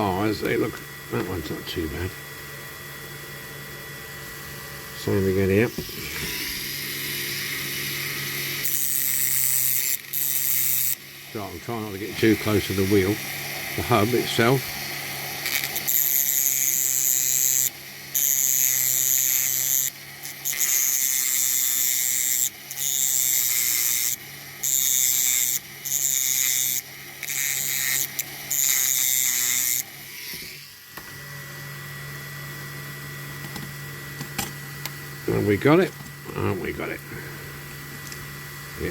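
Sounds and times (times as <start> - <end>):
rotary tool grinding metal: 5.0 - 30.9.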